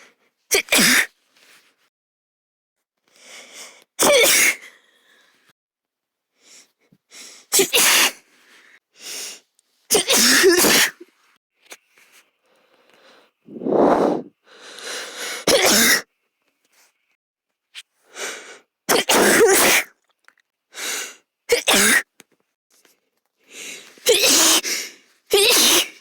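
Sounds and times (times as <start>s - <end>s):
girl sneezing: 0.5s - 1.1s, 7.5s - 8.2s, 9.9s - 11.0s, 15.5s - 16.0s, 18.9s - 19.9s, 24.0s - 24.6s, 25.3s - 26.0s
quick breaths drawn in: 11.9s - 15.5s.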